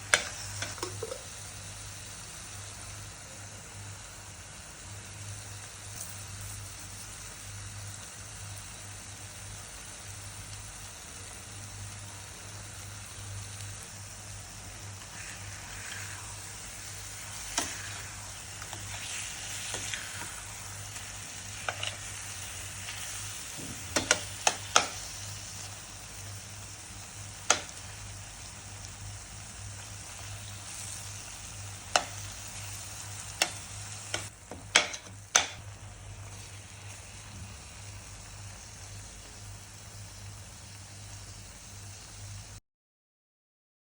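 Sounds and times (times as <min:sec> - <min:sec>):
omelette sizzling in a pan: 0:00.0 - 0:42.6
utensil scraping a pan: 0:15.0 - 0:22.2.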